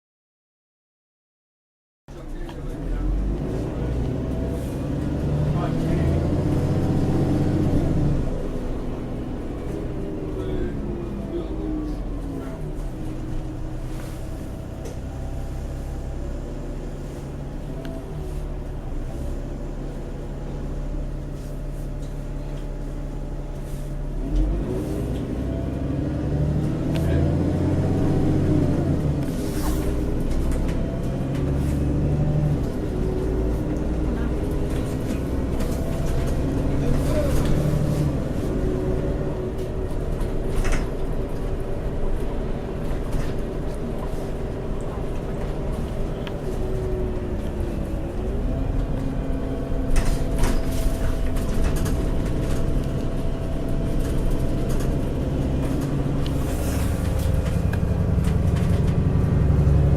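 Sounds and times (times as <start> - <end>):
bus engine running: 2.1 - 59.9
light rattles and clicks: 49.8 - 59.9.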